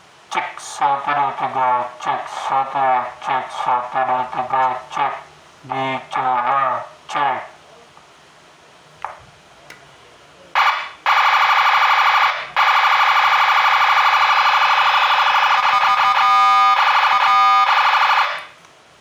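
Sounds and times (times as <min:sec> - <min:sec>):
pulsing electronic siren: 0:10.6 - 0:18.5.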